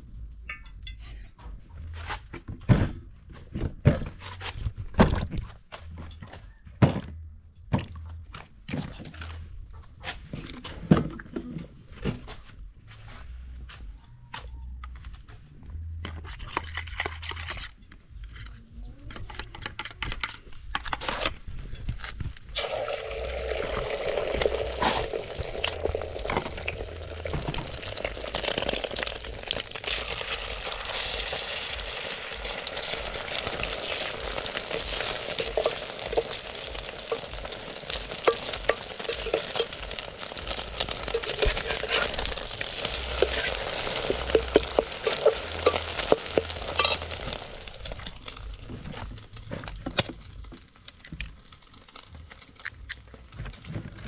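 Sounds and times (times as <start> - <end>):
food sizzling in a pan: 22.6 - 48.6.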